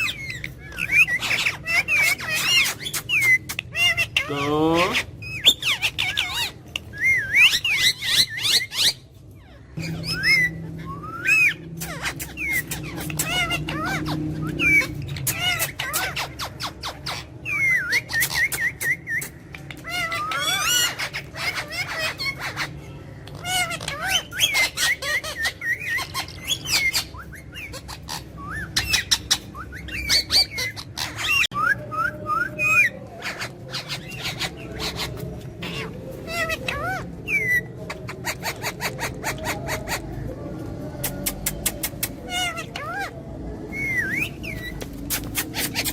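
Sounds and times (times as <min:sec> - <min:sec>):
parrot whistling and chattering: 0:00.0 - 0:45.9.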